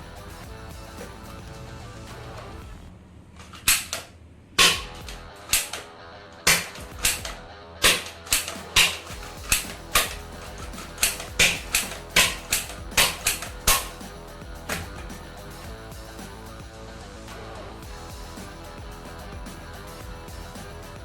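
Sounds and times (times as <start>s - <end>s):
background music: 0.0s - 2.9s, 4.6s - 21.0s
toy gun shots: 3.4s - 14.0s, 14.7s - 15.2s.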